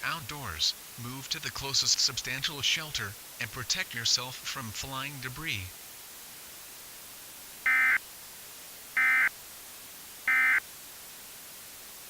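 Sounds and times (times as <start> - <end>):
static hiss: 0.0 - 12.0
digital data tone bursts: 7.7 - 8.0, 9.0 - 9.3, 10.3 - 10.6.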